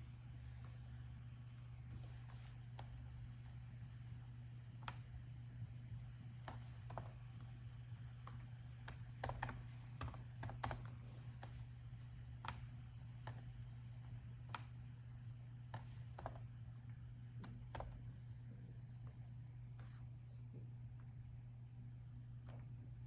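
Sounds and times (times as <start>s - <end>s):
steady low hum: 0.0s - 23.0s
laptop keyboard typing: 1.9s - 3.7s, 4.7s - 5.3s, 6.3s - 14.9s, 15.6s - 16.6s, 17.3s - 18.1s.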